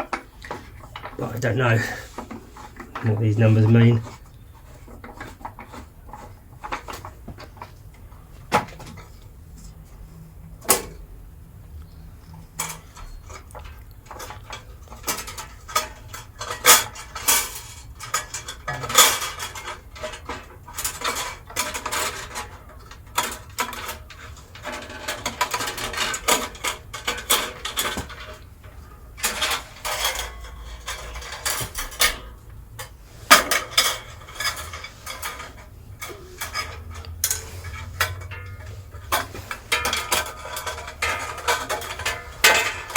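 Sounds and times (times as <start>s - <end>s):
bandsaw blade clinking and rattling: 29.2s - 42.9s.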